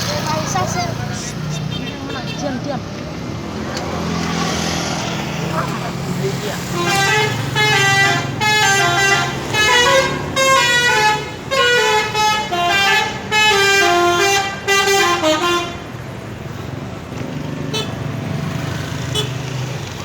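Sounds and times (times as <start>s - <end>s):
musical air horn playing a tune: 6.8s - 15.8s.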